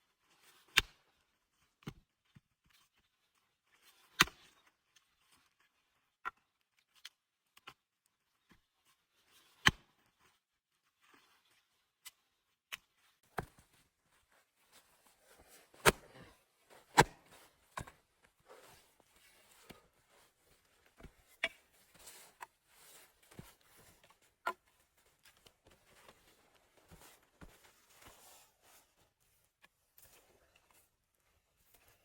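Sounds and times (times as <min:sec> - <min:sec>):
soft rustling: 0:12.5 - 0:32.0.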